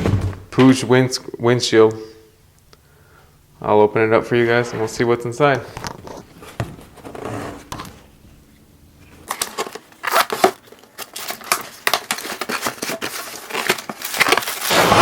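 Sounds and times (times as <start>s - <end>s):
cardboard box crinkling and tearing: 9.2s - 15.0s.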